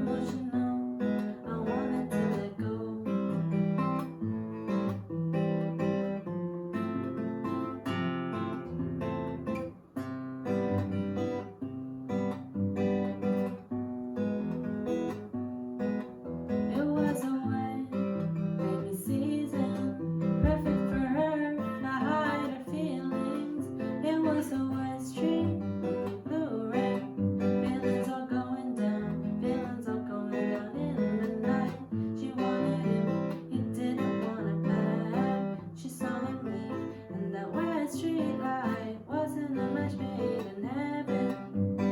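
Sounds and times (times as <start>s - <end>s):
person singing: 0.0s - 3.3s, 16.8s - 18.0s, 18.6s - 41.6s
acoustic guitar: 0.0s - 41.9s.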